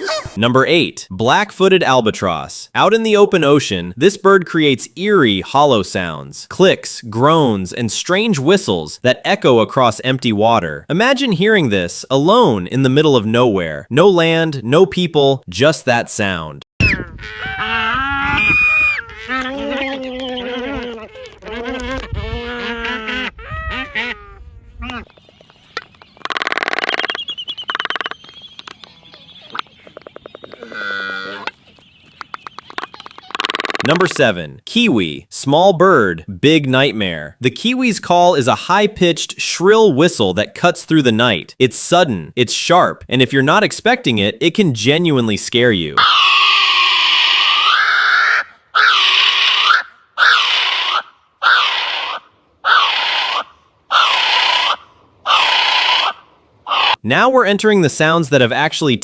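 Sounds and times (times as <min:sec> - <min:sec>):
albatross moaning call: 0:00.0 - 0:00.4, 0:17.0 - 0:34.0, 0:46.0 - 0:57.0
kiwi shrill whistling call: 0:16.8 - 0:17.6, 0:25.7 - 0:31.6
albatross bill-clacking: 0:17.9 - 0:24.2, 0:24.8 - 0:34.2.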